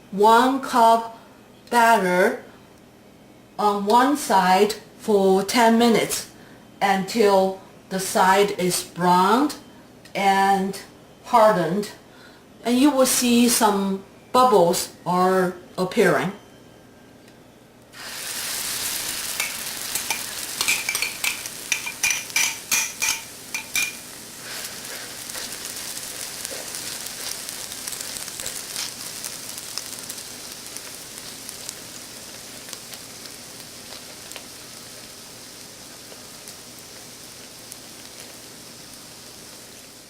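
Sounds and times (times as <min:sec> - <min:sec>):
batter sizzling in hot oil: 0:18.0 - 0:40.0
sharp oil crackles: 0:22.8 - 0:40.0.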